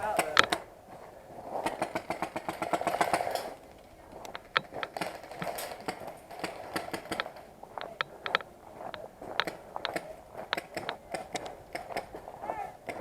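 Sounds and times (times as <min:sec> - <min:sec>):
airsoft gun firing: 0:01.6 - 0:03.6, 0:04.6 - 0:07.5.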